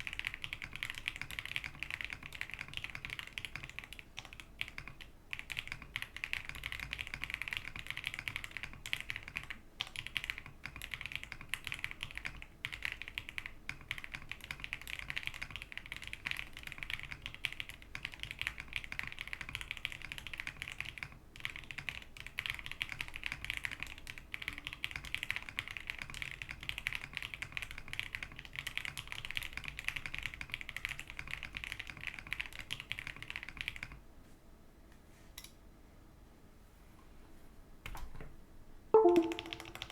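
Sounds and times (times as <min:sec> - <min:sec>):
mechanical keyboard typing: 0:00.0 - 0:34.0, 0:39.0 - 0:39.9.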